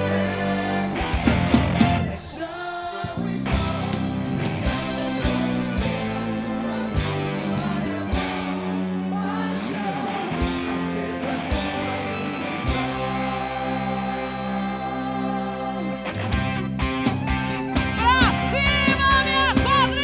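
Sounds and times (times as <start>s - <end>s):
steady bass: 0.0s - 2.2s, 3.1s - 20.0s
held chords: 0.0s - 20.0s
heavy drum and cymbal hits: 3.5s - 8.9s.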